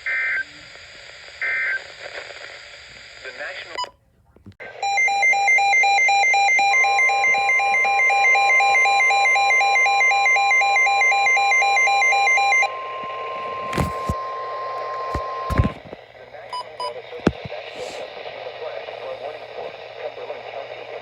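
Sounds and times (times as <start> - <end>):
two-tone warbling alarm beeps: 4.8 - 12.8.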